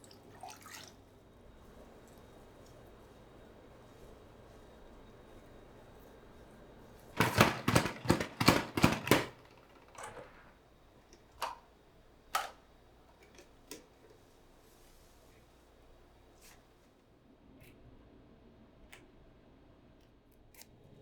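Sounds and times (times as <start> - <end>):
sharp knocks: 7.2 - 10.4.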